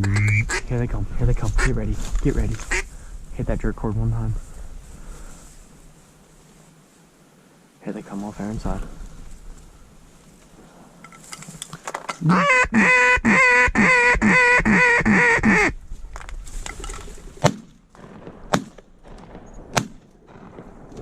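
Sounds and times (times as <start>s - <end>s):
duck call quacks: 0.0s - 0.6s, 12.2s - 15.8s
shotgun shots: 17.4s - 21.0s.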